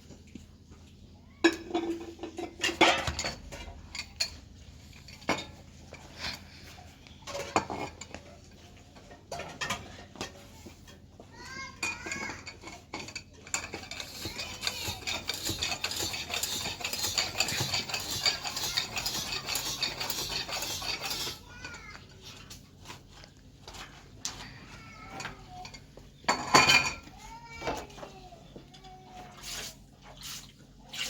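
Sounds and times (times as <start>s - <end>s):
metallic clinking and rattling: 12.1s - 21.4s.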